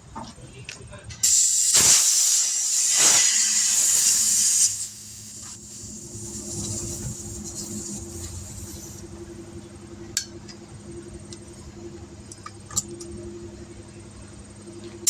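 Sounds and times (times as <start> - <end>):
compressed air hissing: 1.2 - 9.2
low machine hum: 4.9 - 15.0.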